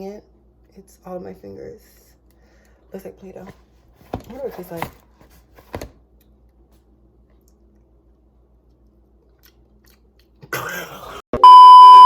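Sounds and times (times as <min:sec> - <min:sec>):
faint chewing: 0:07.2 - 0:10.6.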